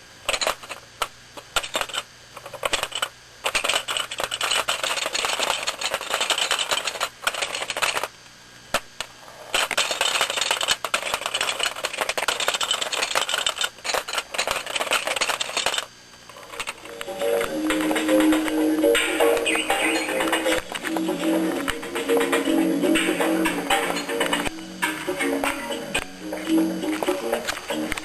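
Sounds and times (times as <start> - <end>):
clatter of small hard objects: 0.3 - 8.1, 9.4 - 16.9.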